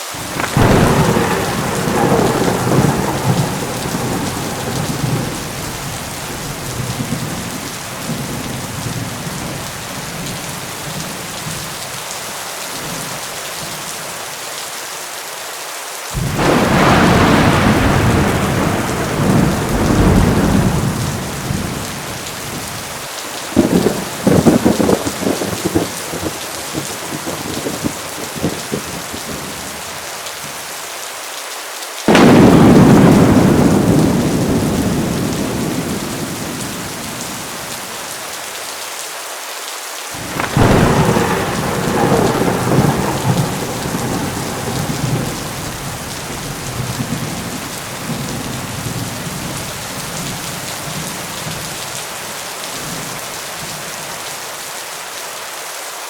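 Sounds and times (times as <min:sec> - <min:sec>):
heavy rain pouring: 0:00.0 - 0:56.0
sharp thunder claps: 0:00.2 - 0:11.8, 0:16.2 - 0:29.9, 0:32.1 - 0:38.0, 0:40.2 - 0:51.8
thunder rumbling: 0:00.2 - 0:12.0, 0:16.2 - 0:30.5, 0:32.1 - 0:38.4, 0:40.2 - 0:52.0.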